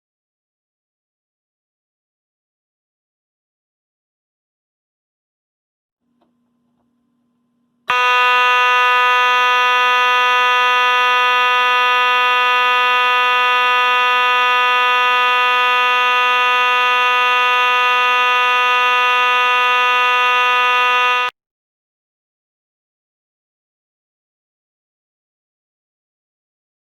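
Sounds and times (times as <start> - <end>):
fire alarm horn buzzing: 7.9 - 21.4.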